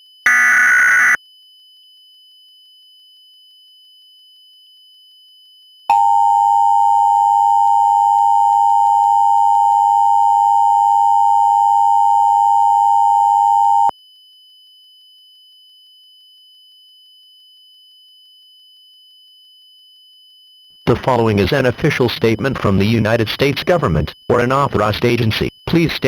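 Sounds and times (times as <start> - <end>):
two-tone alert signal: 0.3 - 1.2.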